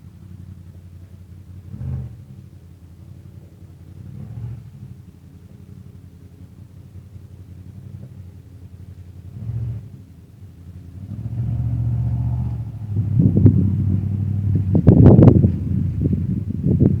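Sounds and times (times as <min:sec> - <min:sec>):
distant vehicle engine droning: 0:00.0 - 0:17.0
wind buffeting microphone: 0:12.3 - 0:17.0.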